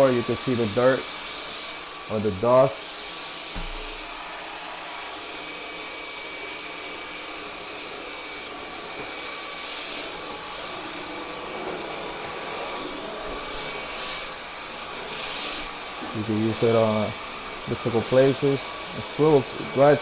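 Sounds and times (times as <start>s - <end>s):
vacuum cleaner running: 0.0s - 20.0s.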